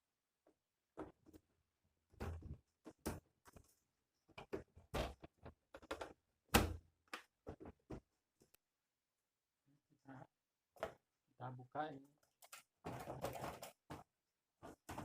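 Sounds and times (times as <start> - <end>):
plastic parts knocking and clattering: 2.1 - 8.2, 12.2 - 15.0.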